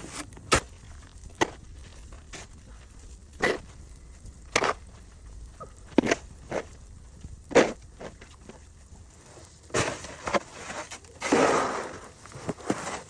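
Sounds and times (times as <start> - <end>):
shovel crunching and scraping snow: 0.0 - 3.8, 4.5 - 4.9, 7.5 - 8.6, 9.2 - 13.0
shovel hitting icy crust: 9.7 - 13.0.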